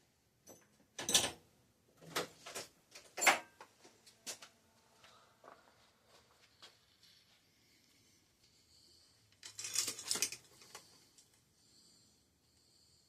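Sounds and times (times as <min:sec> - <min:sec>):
hand tools clacking and rattling: 0:09.4 - 0:10.8.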